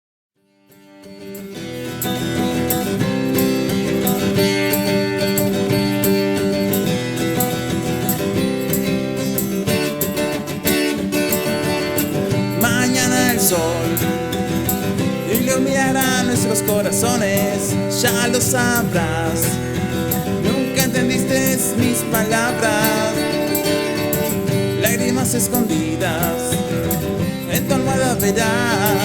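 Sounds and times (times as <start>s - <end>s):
strummed acoustic guitar: 0.4s - 29.0s.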